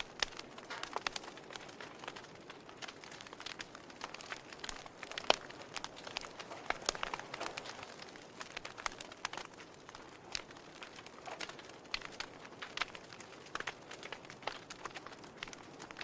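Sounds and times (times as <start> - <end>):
burning wood crackling and popping: 0.0 - 16.0
soft hiss of flame: 0.0 - 16.0.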